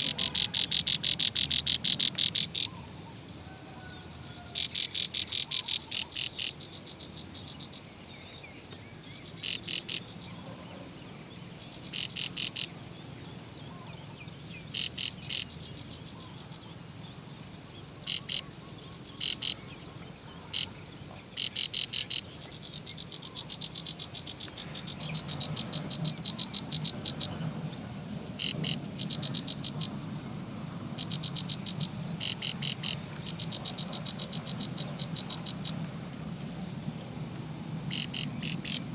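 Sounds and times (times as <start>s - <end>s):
high-pitched pulsed animal calls: 31.0s - 35.8s.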